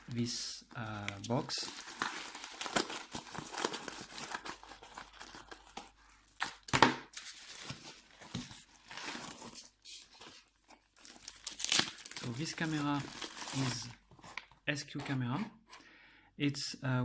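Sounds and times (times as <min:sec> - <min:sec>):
packaging crinkling and tearing: 0:00.0 - 0:14.6.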